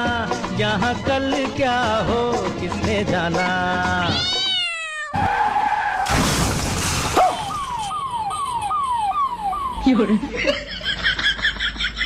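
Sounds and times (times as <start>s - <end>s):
person singing: 0.7s - 4.4s
crash with shattering: 6.0s - 7.9s.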